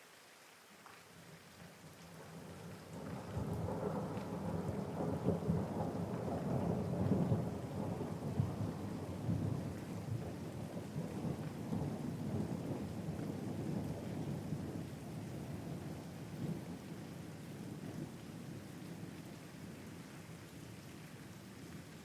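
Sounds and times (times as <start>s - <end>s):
steady rain: 0.0s - 22.0s
thunder rumbling: 2.3s - 16.7s.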